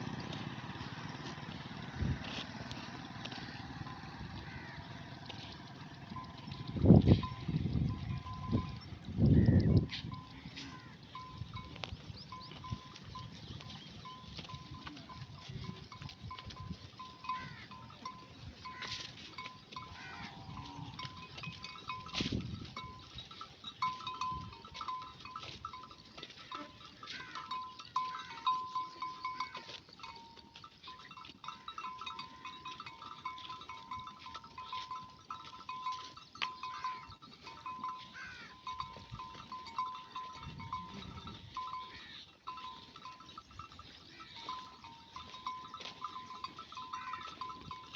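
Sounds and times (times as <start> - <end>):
sheep bells tinkling: 0.0 - 47.9
sheep bleating: 17.2 - 17.9, 19.8 - 21.5, 26.4 - 28.5, 36.6 - 38.9, 40.0 - 42.3, 46.7 - 47.6.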